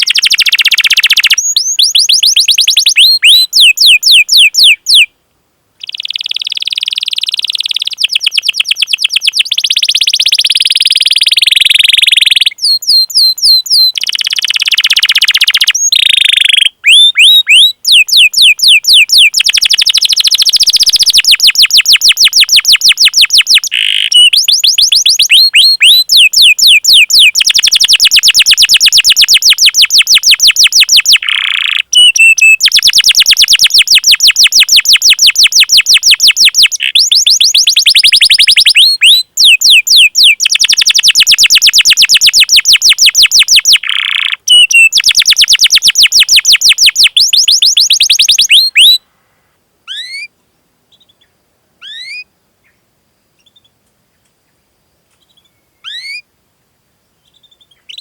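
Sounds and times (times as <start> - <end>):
canary singing chirps and trills: 0.0 - 5.1, 5.8 - 49.0, 49.9 - 50.3, 50.9 - 52.8, 55.2 - 56.2, 57.2 - 58.0.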